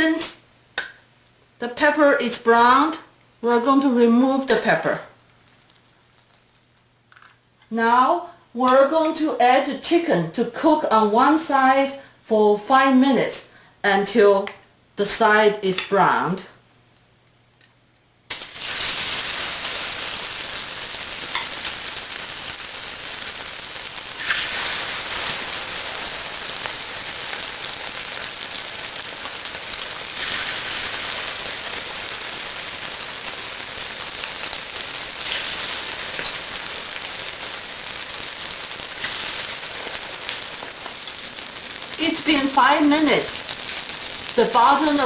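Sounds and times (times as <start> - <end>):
chicken sizzling in hot oil: 18.3 - 45.0.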